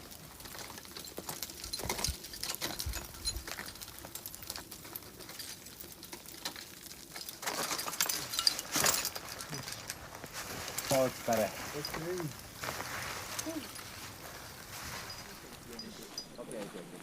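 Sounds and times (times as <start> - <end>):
climbing gear clicking on ice: 0.0 - 16.5.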